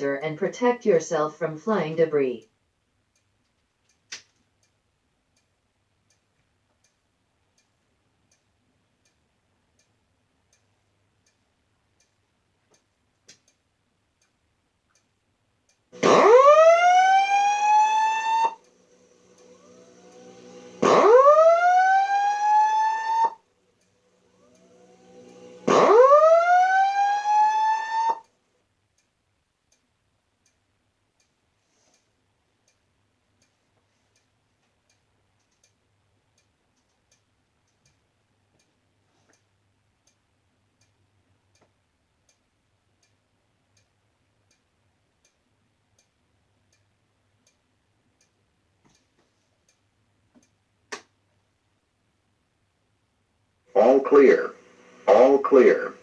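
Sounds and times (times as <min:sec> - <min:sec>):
faint regular ticking: 0:00.0 - 0:16.1, 0:18.6 - 0:21.6, 0:22.2 - 0:25.7, 0:28.6 - 0:56.0
fire alarm whoop tones: 0:16.0 - 0:18.6, 0:19.4 - 0:23.4, 0:24.9 - 0:28.3.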